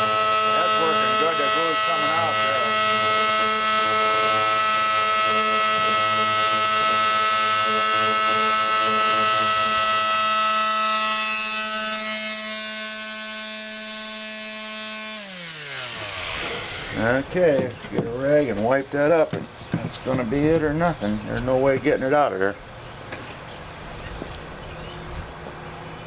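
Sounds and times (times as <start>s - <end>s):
small electric tool motor hum: 0.0s - 17.4s.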